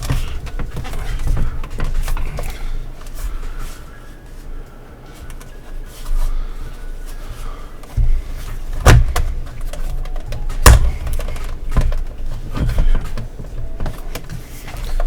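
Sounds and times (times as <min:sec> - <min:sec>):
plastic pieces bumping and rubbing: 0:08.8 - 0:13.6
sharp plastic knocks: 0:08.8 - 0:14.0.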